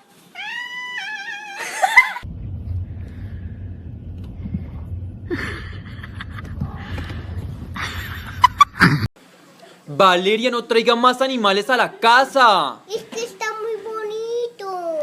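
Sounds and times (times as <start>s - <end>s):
cat meowing: 0.3s - 1.7s
low rumble: 2.2s - 9.1s.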